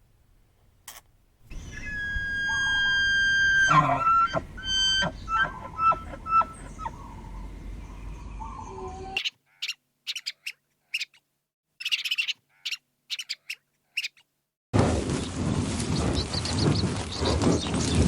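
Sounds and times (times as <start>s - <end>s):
whistle-like animal calls: 1.5s - 9.2s
high bird chirps: 1.5s - 11.1s, 11.8s - 14.2s.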